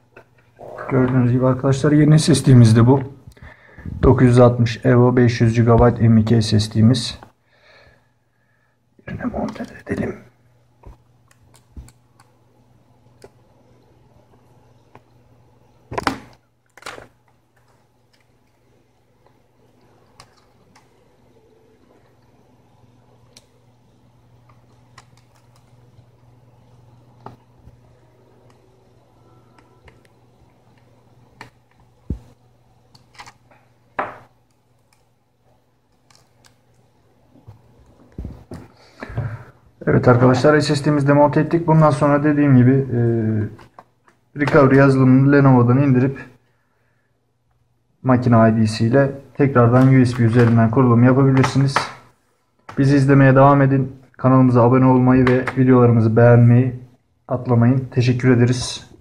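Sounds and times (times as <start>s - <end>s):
faint low hum: 0.0s - 59.0s
faint clicks of small parts: 16.6s - 18.6s, 19.2s - 21.0s, 34.4s - 35.2s, 35.9s - 36.9s.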